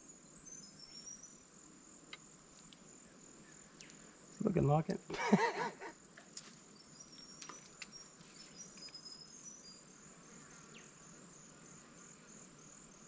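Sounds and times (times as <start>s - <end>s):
insects chirping: 0.0s - 13.0s
faint clicks: 2.1s - 2.8s, 3.8s - 4.0s.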